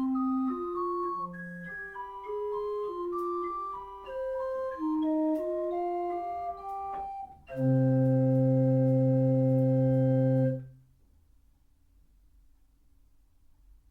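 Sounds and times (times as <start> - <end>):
pipe organ playing: 0.0 - 10.7.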